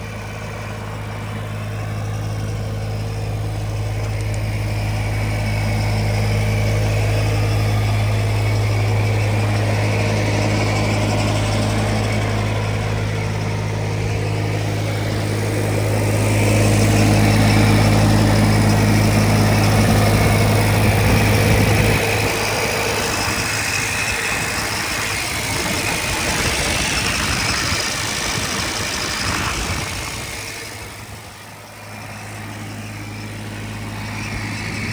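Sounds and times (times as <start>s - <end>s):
diesel engine running: 0.0s - 34.9s
hiss: 23.2s - 30.8s.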